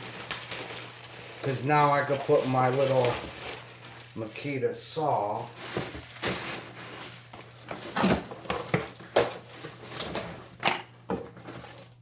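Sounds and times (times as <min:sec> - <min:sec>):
bag rustling: 0:00.0 - 0:08.4.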